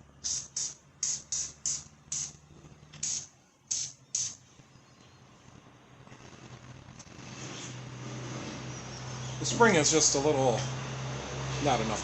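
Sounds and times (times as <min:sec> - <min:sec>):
aerosol spray hissing: 0:00.2 - 0:02.4, 0:03.0 - 0:04.4.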